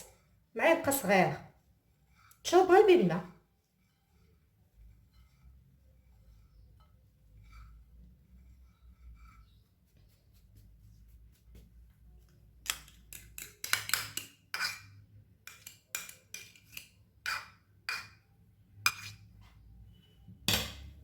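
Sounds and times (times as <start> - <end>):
kitchenware clattering and scraping: 12.6 - 19.4.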